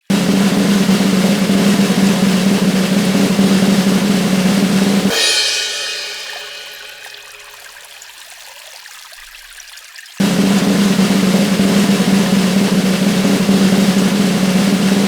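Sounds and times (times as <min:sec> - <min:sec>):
snare drum roll: 0:00.0 - 0:07.7, 0:10.2 - 0:15.0
bass drum tone: 0:00.1 - 0:06.9, 0:10.2 - 0:15.0
cymbal crash ringing: 0:00.1 - 0:07.7, 0:10.2 - 0:15.0.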